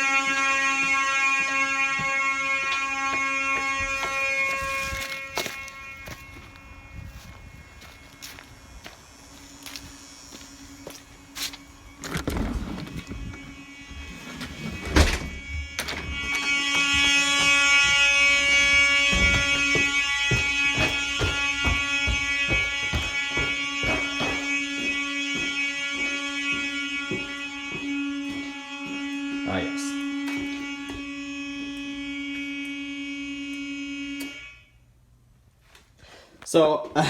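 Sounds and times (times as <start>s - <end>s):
footsteps: 0.0s - 14.8s, 15.9s - 31.2s
fire alarm buzzing horn: 0.0s - 35.9s
knocks: 18.6s - 24.6s.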